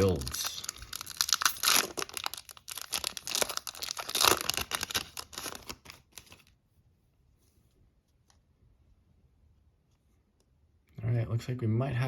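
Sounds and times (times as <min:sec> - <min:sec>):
foil wrapper tearing and crinkling: 0:00.0 - 0:06.5.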